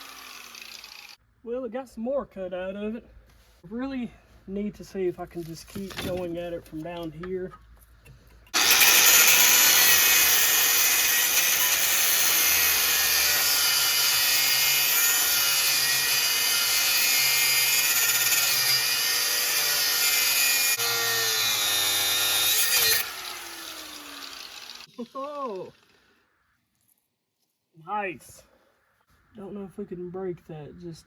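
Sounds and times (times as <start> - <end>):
angle grinder cutting metal: 0.0 - 1.2, 8.5 - 26.0.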